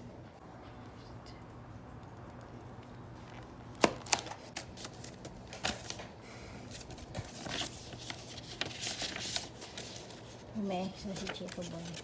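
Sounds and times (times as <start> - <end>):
paper or plastic crinkling: 3.2 - 12.0.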